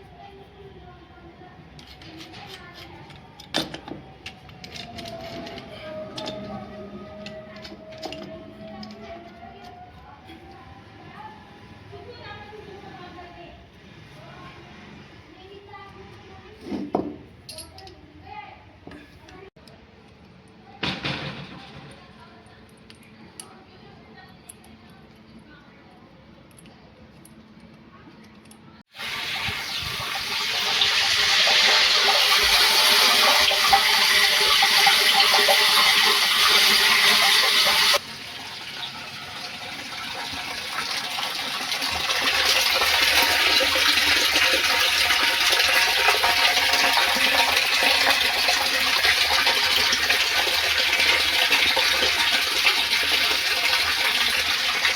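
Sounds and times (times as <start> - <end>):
water gushing from pump outlet: 28.9 - 54.9.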